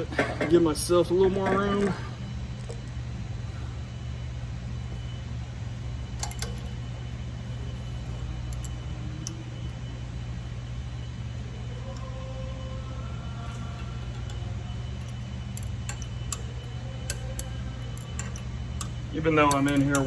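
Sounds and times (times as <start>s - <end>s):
faint high whine: 0.0s - 20.0s
low machine drone: 0.0s - 20.0s.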